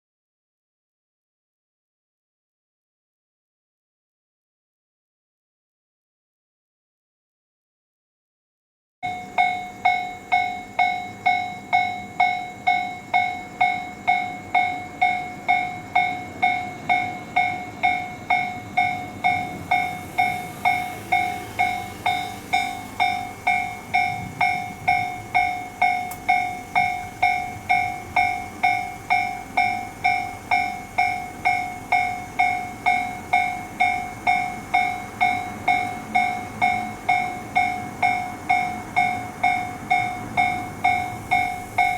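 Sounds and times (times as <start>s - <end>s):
level crossing warning bell ringing: 9.0s - 41.9s.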